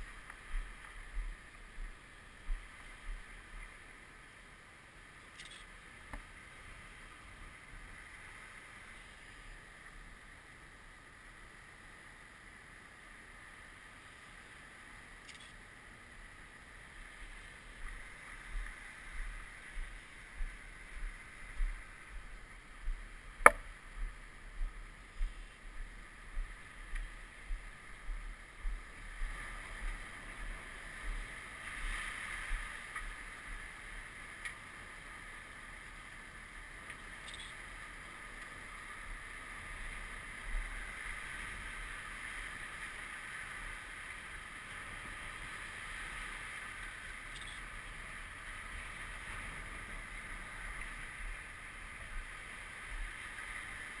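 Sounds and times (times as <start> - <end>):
floodwater lapping and sloshing: 25.3 - 54.0.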